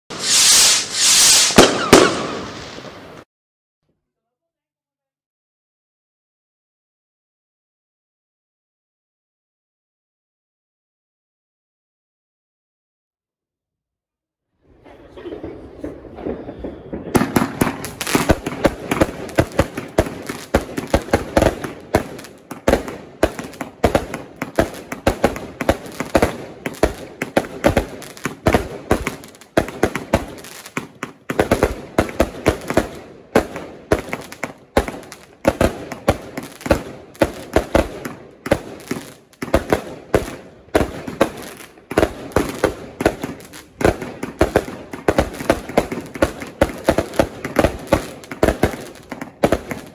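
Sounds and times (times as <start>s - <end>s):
fireworks rapid loud bangs: 0.1s - 3.3s, 15.0s - 49.9s.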